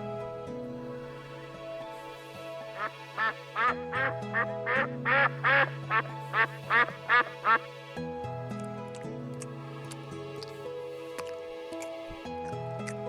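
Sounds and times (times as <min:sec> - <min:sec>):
soft background music: 0:00.0 - 0:13.0
duck quacking: 0:02.8 - 0:07.6.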